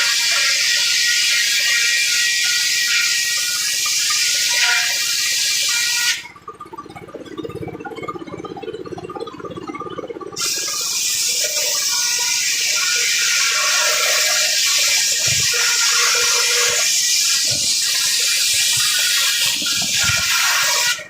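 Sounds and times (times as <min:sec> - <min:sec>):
circular saw cutting wood: 0:00.0 - 0:06.3, 0:10.4 - 0:21.0.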